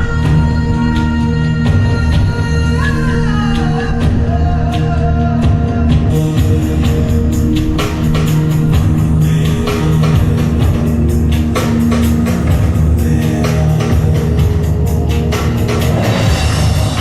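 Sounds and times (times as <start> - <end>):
song with heavy bass and singing: 0.0 - 17.0
steady drum beat: 3.6 - 17.0.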